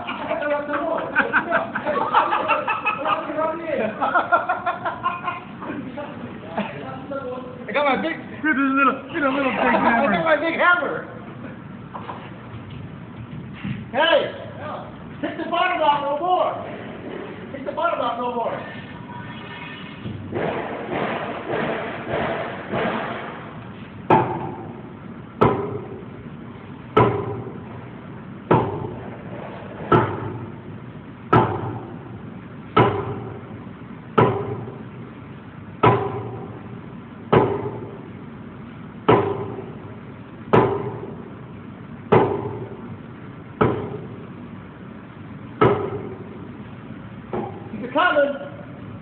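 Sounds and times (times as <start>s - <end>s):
sledgehammer striking concrete block: 20.4s - 23.4s, 27.0s - 27.6s, 32.8s - 33.4s, 34.2s - 34.7s, 35.8s - 36.6s, 37.3s - 38.0s, 39.1s - 39.7s, 40.5s - 41.2s, 42.1s - 42.7s, 43.6s - 44.1s, 45.6s - 46.2s.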